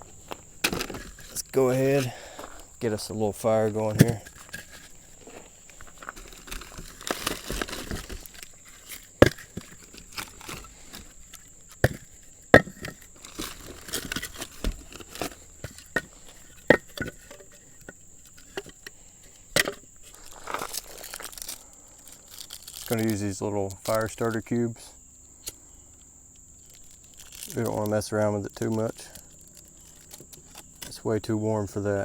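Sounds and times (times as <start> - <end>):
firewood knocking together: 0.0 - 21.5.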